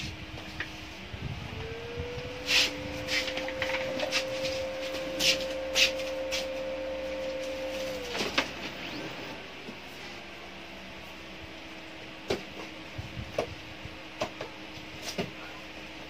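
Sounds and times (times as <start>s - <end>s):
printer motor whining: 1.0s - 10.0s.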